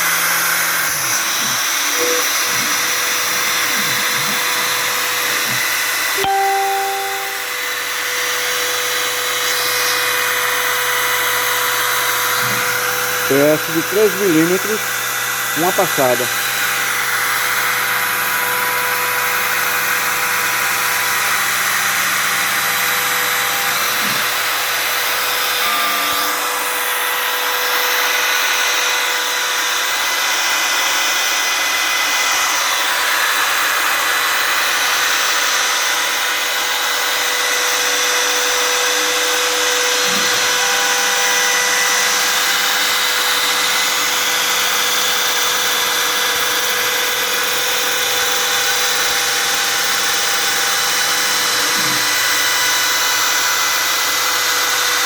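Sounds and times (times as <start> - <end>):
router spindle whining: 0.0 - 55.0
short rising tone: 6.2 - 7.8.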